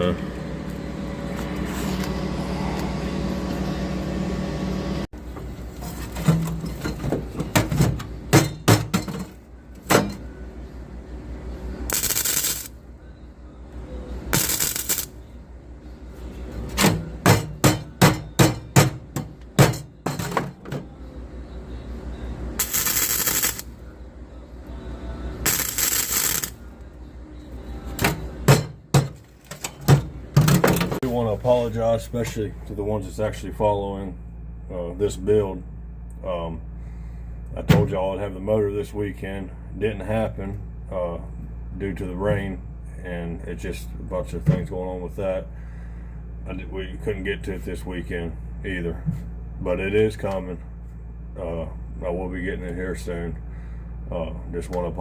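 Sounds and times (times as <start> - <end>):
steady hum: 0.0 - 55.0
tack welding: 11.9 - 12.8, 14.3 - 15.2, 22.6 - 23.7, 25.4 - 26.6
hammer on sheet metal: 16.8 - 20.2.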